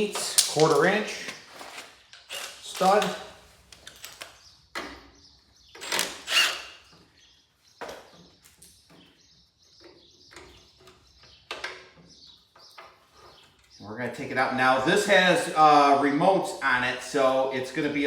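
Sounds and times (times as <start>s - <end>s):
hand tools clicking and knocking: 0.0s - 1.4s, 2.1s - 5.0s.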